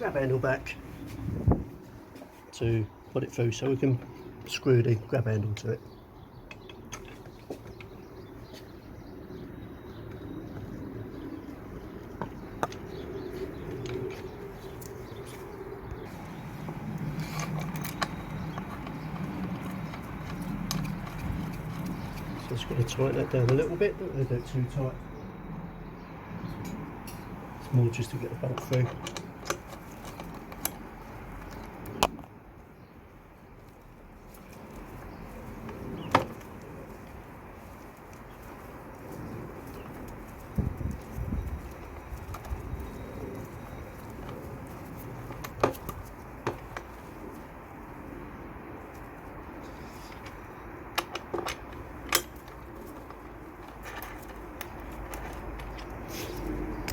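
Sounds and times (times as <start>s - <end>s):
tools and metal parts clicking: 16.2s - 23.7s, 28.4s - 32.1s, 49.6s - 56.9s.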